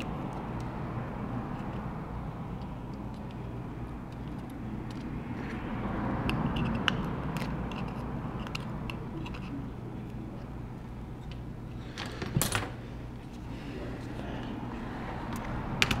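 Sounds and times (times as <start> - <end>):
small tools clicking: 6.2 - 9.5.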